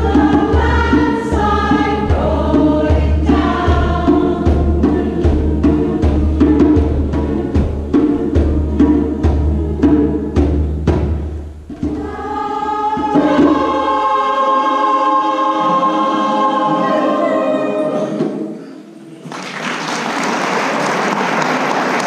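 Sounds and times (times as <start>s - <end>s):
choir holding a chord: 0.0s - 10.3s, 11.8s - 19.2s
low drum strikes: 0.0s - 14.0s
audience applause: 19.2s - 22.0s.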